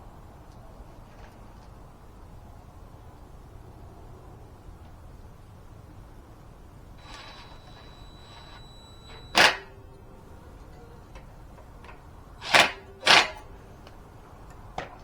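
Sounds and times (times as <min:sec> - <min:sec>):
metal parts clanking: 0:07.0 - 0:09.8, 0:10.6 - 0:15.0.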